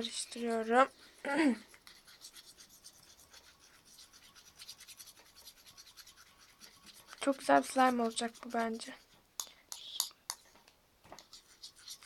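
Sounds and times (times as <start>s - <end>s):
spoon scraping slime: 0.0s - 10.5s, 11.2s - 12.0s.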